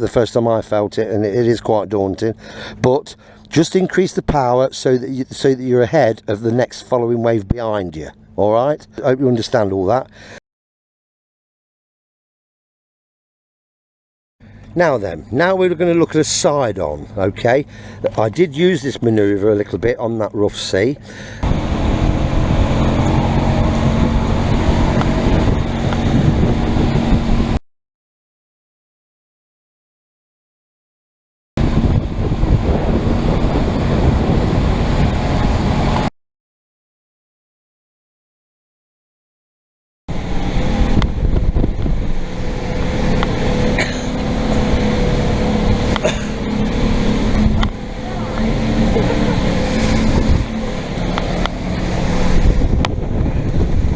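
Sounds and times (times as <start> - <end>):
motorboat engine drone: 0.7 - 3.5, 8.0 - 10.4, 14.4 - 18.7, 20.9 - 27.6, 31.6 - 36.1, 40.1 - 53.9
rushing water: 21.4 - 27.2, 40.1 - 53.9
wind buffeting microphone: 21.4 - 27.6, 31.6 - 36.1, 40.1 - 53.9.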